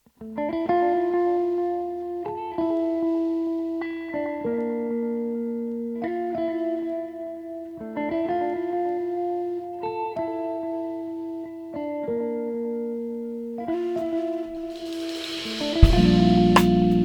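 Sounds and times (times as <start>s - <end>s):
plucked guitar chords: 0.2s - 17.0s.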